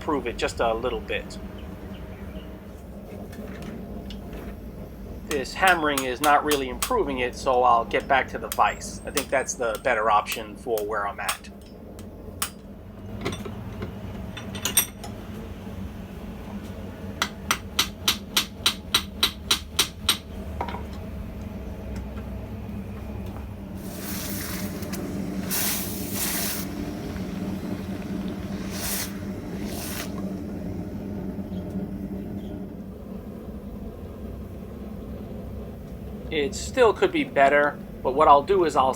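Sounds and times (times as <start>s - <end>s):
hammer striking steel: 8.5s - 11.6s, 17.2s - 20.8s
hissing: 23.7s - 38.2s.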